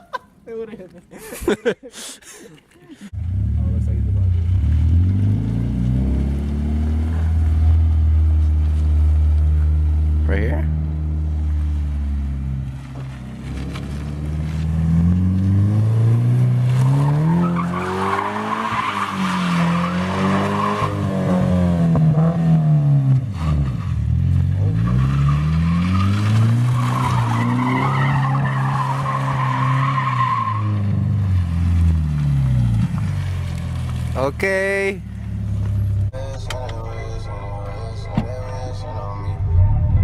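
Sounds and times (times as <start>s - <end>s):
car engine revving: 3.1s - 40.0s
tire squeal: 16.7s - 21.2s, 24.6s - 32.4s.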